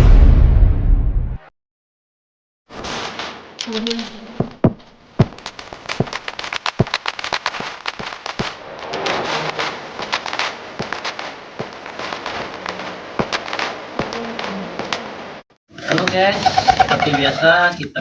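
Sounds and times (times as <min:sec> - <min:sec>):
rustling wingbeats: 0:02.8 - 0:17.4
pigeon wings clapping: 0:03.7 - 0:08.6, 0:09.4 - 0:15.1.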